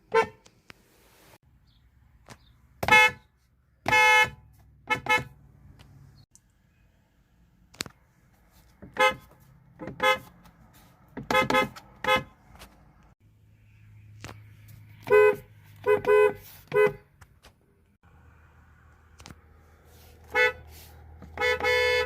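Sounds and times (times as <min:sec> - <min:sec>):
car horns honking: 0:00.0 - 0:00.5, 0:02.8 - 0:05.5, 0:08.8 - 0:10.5, 0:11.2 - 0:12.4, 0:15.0 - 0:17.2, 0:20.2 - 0:22.0.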